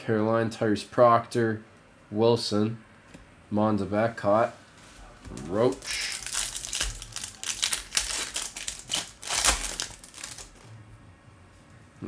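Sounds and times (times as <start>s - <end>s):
card packs crinkling and rustling: 5.3s - 10.8s.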